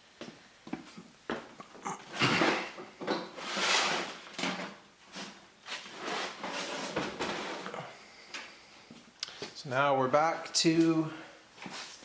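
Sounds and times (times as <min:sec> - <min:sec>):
objects sliding and scraping: 0:02.1 - 0:09.0, 0:11.6 - 0:12.0.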